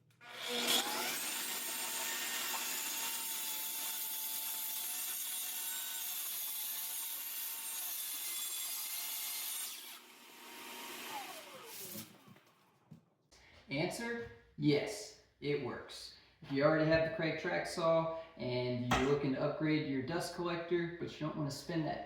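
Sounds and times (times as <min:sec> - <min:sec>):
saw cutting through wood: 0:00.2 - 0:12.5
dust extractor: 0:11.0 - 0:12.0.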